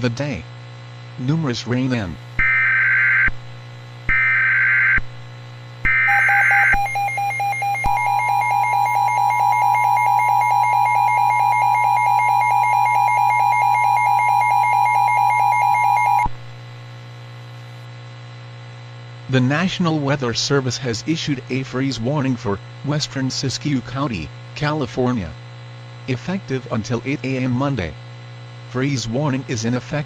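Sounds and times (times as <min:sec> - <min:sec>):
steady alert tone: 0:05.9 - 0:16.3
warbling data screech: 0:05.9 - 0:16.3.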